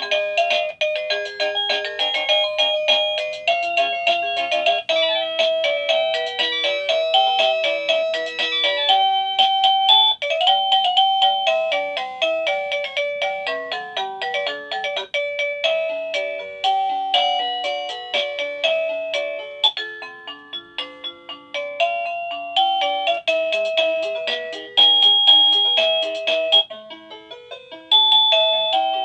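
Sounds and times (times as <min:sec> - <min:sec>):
electronic doorbell chime tunes: 0:00.0 - 0:29.0.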